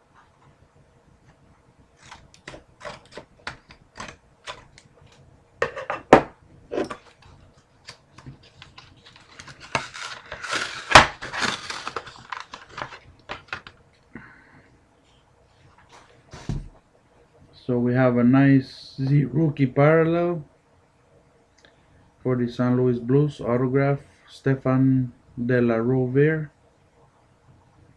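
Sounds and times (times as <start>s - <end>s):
cards rustling and scraping: 2.0s - 5.2s, 6.7s - 13.8s.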